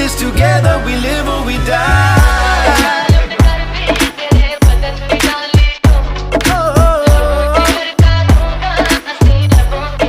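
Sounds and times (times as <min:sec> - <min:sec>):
song with heavy bass beat: 0:00.0 - 0:10.0.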